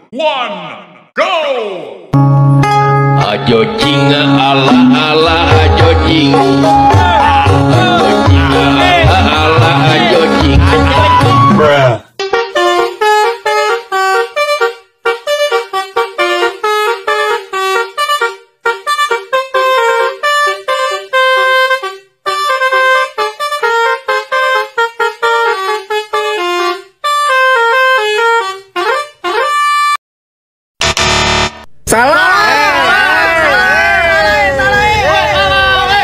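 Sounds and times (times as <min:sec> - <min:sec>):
bus horn melody: 0:02.2 - 0:30.0, 0:30.8 - 0:31.7.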